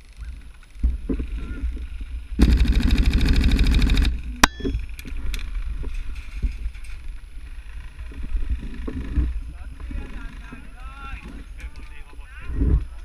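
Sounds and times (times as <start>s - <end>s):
airsoft gun full-auto rattle: 2.4s - 4.3s.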